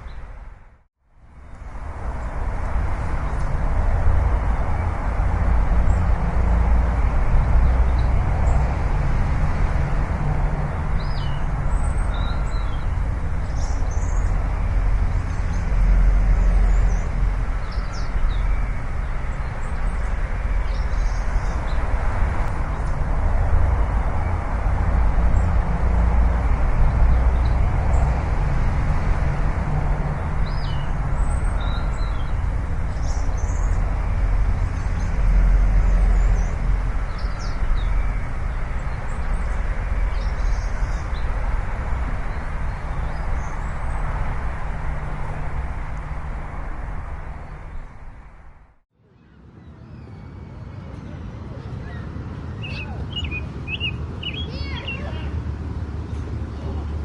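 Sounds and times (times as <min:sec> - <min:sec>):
steady low rumble with hiss: 0:01.3 - 0:48.8
small birds chirping: 0:10.8 - 0:28.3, 0:30.2 - 0:48.0, 0:52.6 - 0:55.4.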